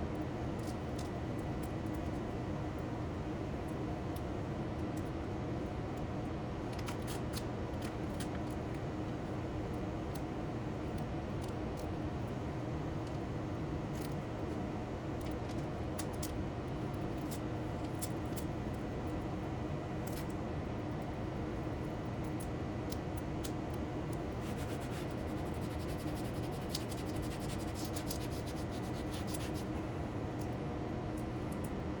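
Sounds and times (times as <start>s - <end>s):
shop noise hum: 24.2s - 30.4s
scratching and rubbing sheet material: 24.4s - 29.8s.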